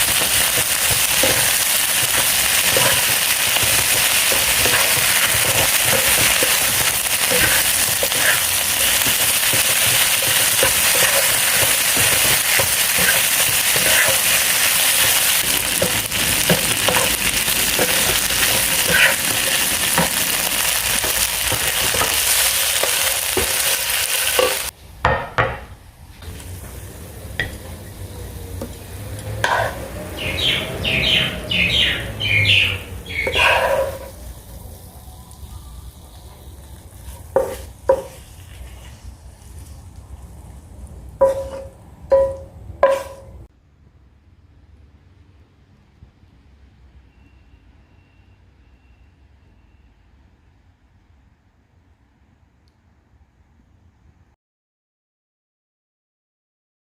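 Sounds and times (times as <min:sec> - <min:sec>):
spatula scraping strokes: 0:00.0 - 0:23.8, 0:29.4 - 0:29.8, 0:33.1 - 0:34.3, 0:36.8 - 0:40.3, 0:41.2 - 0:41.8
food sizzling in a pan: 0:00.0 - 0:24.8, 0:26.2 - 0:43.4.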